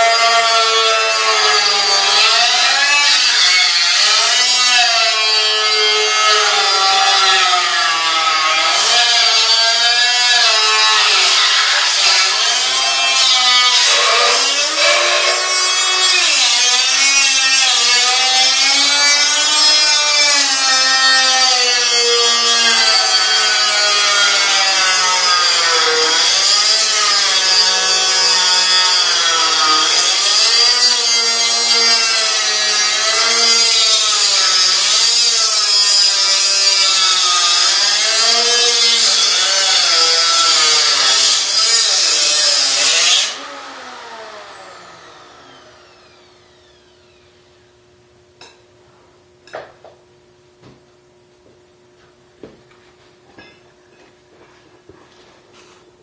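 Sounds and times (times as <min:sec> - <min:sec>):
power cutting tool motor whine: 0:10.9 - 0:19.8, 0:22.4 - 0:47.7.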